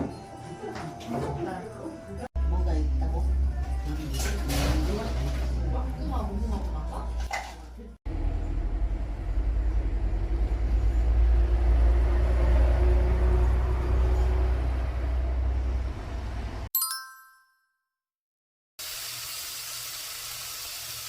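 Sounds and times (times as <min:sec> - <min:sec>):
bright chime: 0:16.8 - 0:17.8.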